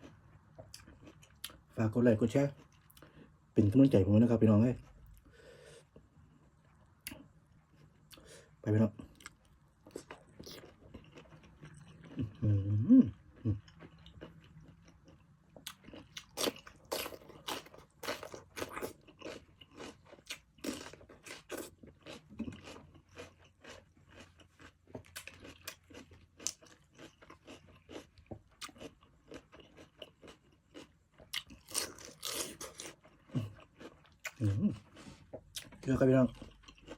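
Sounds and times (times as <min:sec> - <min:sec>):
low vocal hum: 0:12.2 - 0:13.6
wet chewing and mouth clicks: 0:13.4 - 0:36.9.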